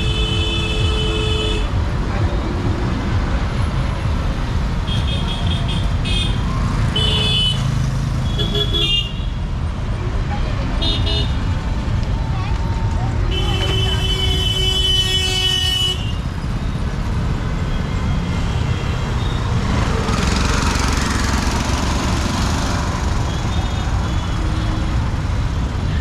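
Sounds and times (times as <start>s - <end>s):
vehicle horn: 13.3s - 16.3s.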